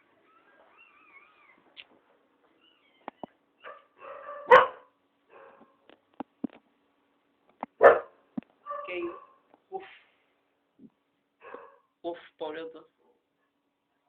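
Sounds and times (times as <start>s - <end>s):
dog whining: 0.2s - 1.8s, 2.5s - 4.5s
dog barking: 3.6s - 5.8s, 7.8s - 9.4s, 11.4s - 11.9s.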